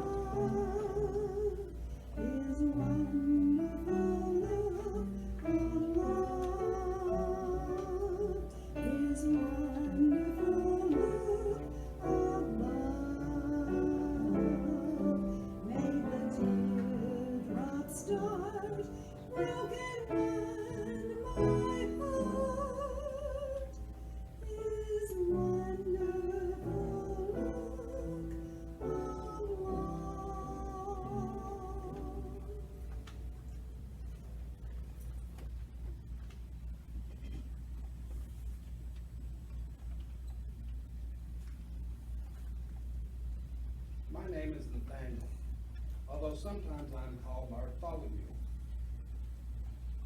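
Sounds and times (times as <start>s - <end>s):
person singing with vibrato: 0.0s - 33.0s.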